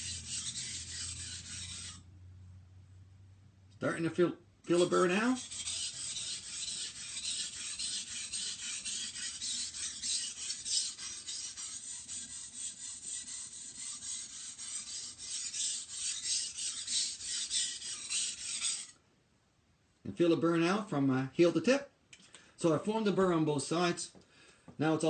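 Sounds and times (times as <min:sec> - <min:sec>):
knife scraping on a waterstone: 0:00.0 - 0:02.0, 0:04.7 - 0:19.0.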